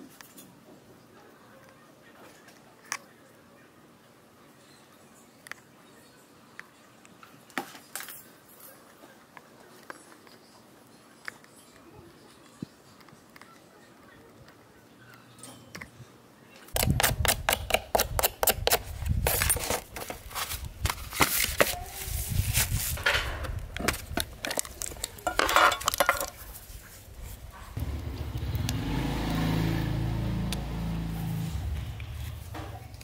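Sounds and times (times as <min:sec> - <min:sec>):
metal and plastic parts clattering: 0:19.3 - 0:21.8, 0:22.9 - 0:26.5.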